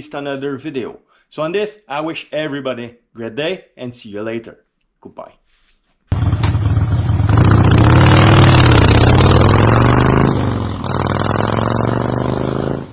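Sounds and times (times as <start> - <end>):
motorcycle engine running hard: 6.1 - 12.8.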